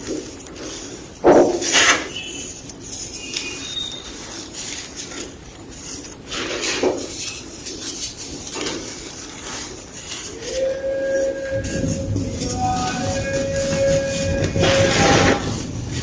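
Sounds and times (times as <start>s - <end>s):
chalk block crunching: 0.0s - 10.4s.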